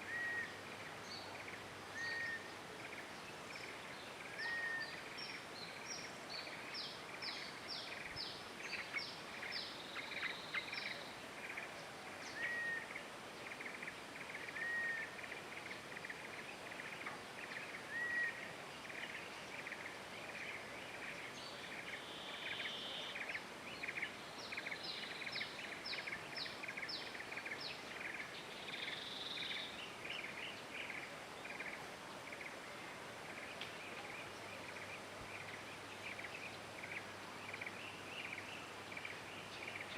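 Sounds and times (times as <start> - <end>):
background hiss: 0.0 - 39.9
whistled bird call: 4.4 - 5.0.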